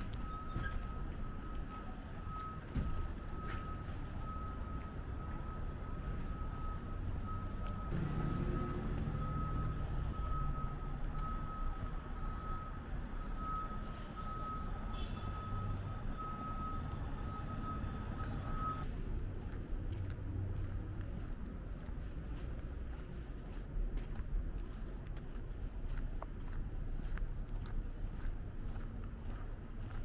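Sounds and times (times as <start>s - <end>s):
reversing alarm beeping: 0.0s - 18.9s
street noise: 0.0s - 30.0s
truck engine rumble: 0.0s - 30.0s.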